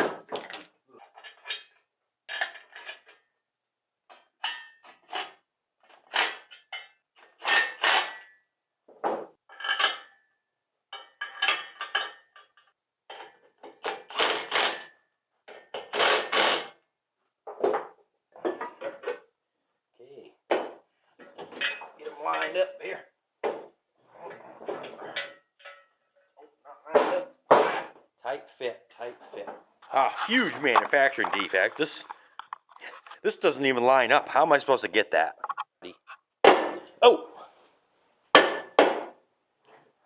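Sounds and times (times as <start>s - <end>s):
metal parts clanking: 21.3s - 21.9s, 30.1s - 33.2s.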